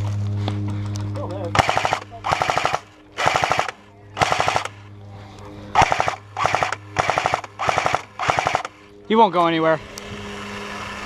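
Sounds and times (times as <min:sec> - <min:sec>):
airsoft rifle bursts: 0:01.5 - 0:04.8, 0:05.8 - 0:08.8.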